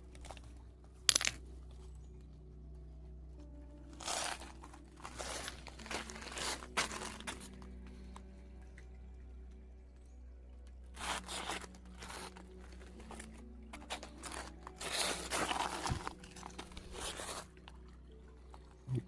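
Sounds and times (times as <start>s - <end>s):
gravel and rocks crunching: 0.0s - 2.6s, 3.4s - 8.3s, 11.0s - 18.8s.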